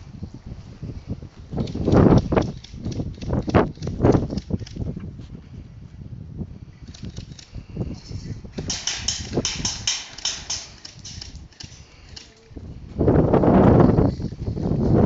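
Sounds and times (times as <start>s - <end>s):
rapid sharp clicks: 8.6s - 12.4s.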